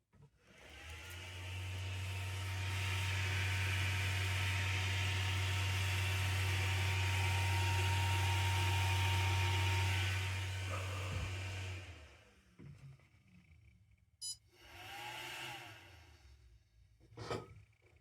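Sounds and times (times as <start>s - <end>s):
machine low hum: 1.0s - 13.0s.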